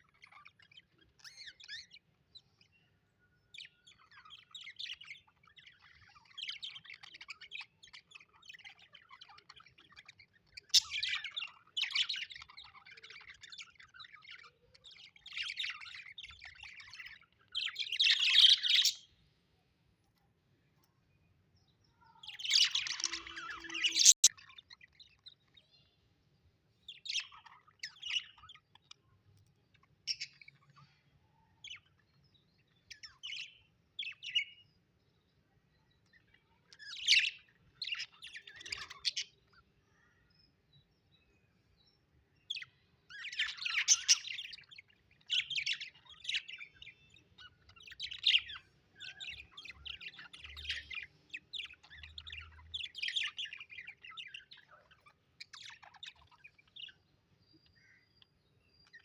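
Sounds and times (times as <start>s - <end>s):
budgerigars chirping: 0.0s - 2.9s, 3.5s - 19.1s, 22.2s - 25.6s, 29.7s - 31.0s, 36.7s - 39.6s, 42.4s - 57.0s.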